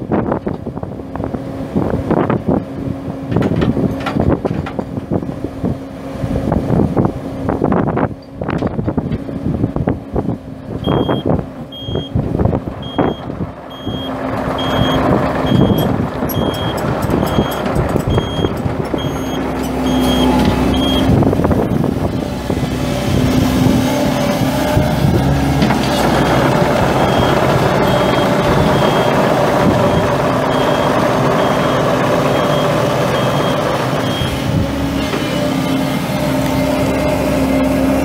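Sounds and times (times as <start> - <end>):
diesel engine running: 0.0 - 38.0
travel alarm beeping: 10.8 - 12.2, 12.8 - 21.1, 26.9 - 34.4.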